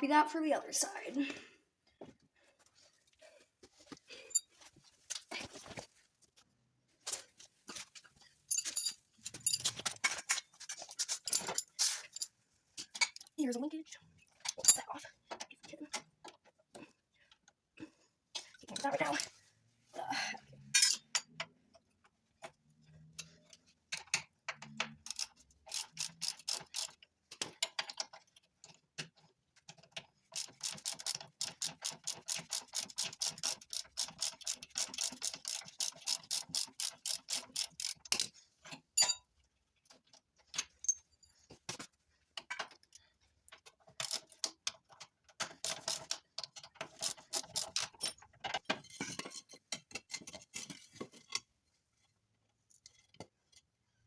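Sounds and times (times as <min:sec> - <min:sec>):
ratchet wrench clicking: 0:25.0 - 0:27.0, 0:30.4 - 0:38.3.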